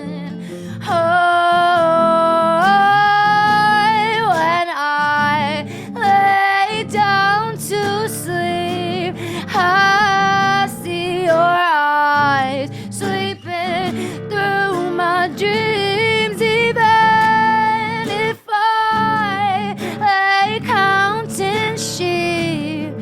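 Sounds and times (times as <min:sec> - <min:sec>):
woman singing with vibrato: 0:00.0 - 0:23.0
singer breathing: 0:00.3 - 0:00.9, 0:05.6 - 0:06.1, 0:09.1 - 0:09.6, 0:12.6 - 0:13.0, 0:13.9 - 0:14.3, 0:19.6 - 0:20.0.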